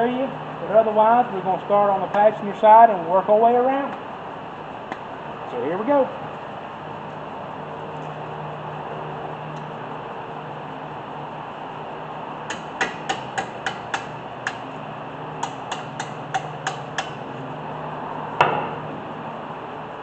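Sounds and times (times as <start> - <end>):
hammer striking metal: 12.5 - 14.6, 15.4 - 17.2, 18.4 - 18.8.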